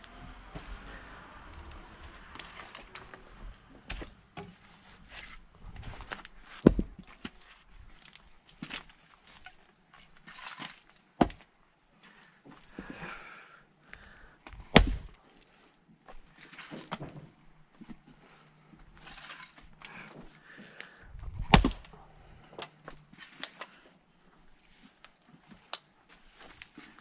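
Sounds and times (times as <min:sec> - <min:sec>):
axe striking firewood: 0:06.6 - 0:07.0, 0:11.2 - 0:11.4, 0:14.5 - 0:15.1, 0:21.2 - 0:22.0.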